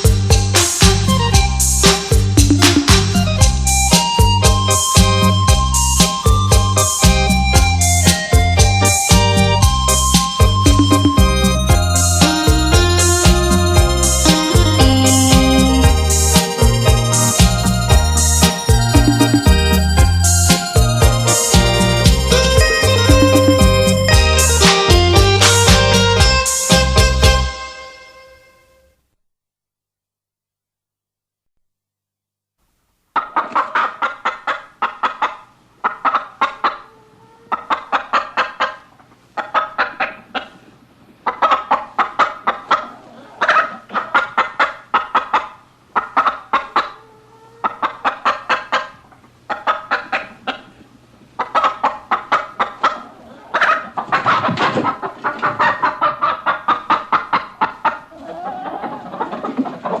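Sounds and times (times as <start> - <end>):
keyboard tune with clucking voice: 0.0 - 28.9.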